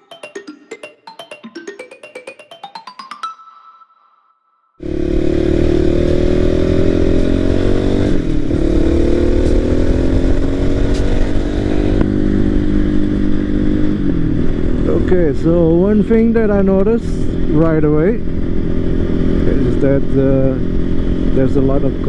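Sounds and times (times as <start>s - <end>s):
music track: 0.0s - 4.4s
motorcycle engine running: 4.8s - 22.0s.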